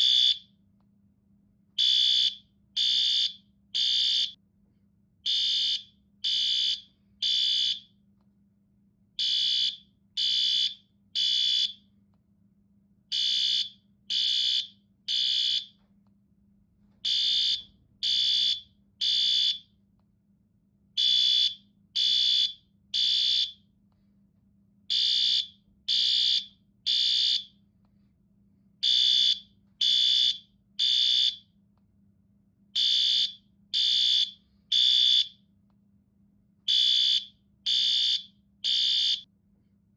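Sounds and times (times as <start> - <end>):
fire alarm beeping: 0.0 - 0.5, 1.8 - 4.4, 5.2 - 8.0, 9.2 - 11.9, 13.1 - 15.8, 17.0 - 19.7, 21.0 - 23.6, 24.9 - 27.6, 28.8 - 31.5, 32.8 - 35.4, 36.7 - 39.3.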